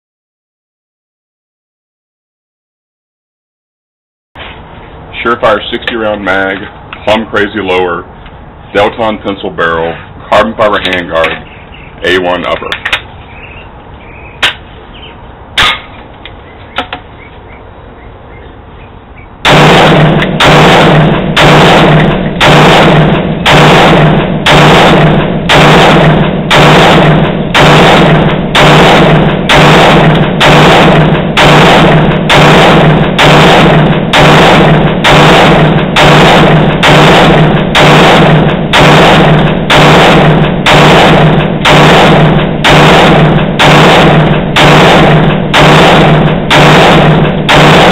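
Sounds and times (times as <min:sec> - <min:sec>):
sharp bangs: 0:15.5 - 0:17.1, 0:19.4 - 0:47.9
steady bass: 0:18.1 - 0:47.9.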